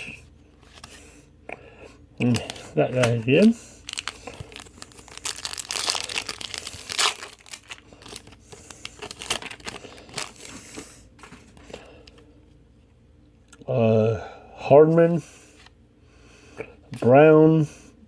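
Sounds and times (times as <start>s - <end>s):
plastic wrappers crinkling: 2.2s - 11.4s.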